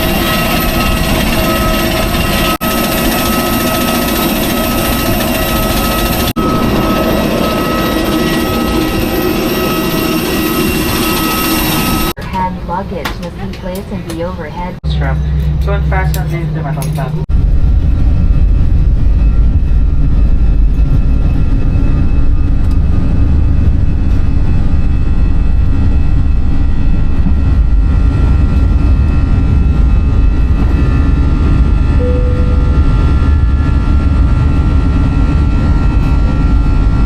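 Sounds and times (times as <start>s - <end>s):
airplane engine and airflow drone: 0.0s - 37.0s
short tone: 32.0s - 34.6s
faint steady tones: 32.0s - 35.6s.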